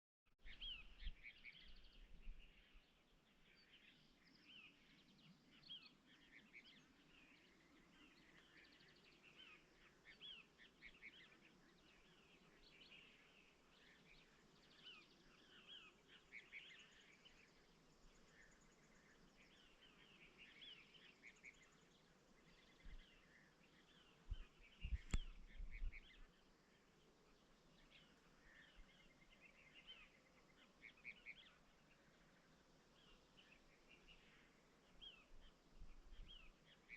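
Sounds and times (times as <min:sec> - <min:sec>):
songbirds chirping: 0:00.4 - 0:36.9
sharp click: 0:25.0 - 0:25.3.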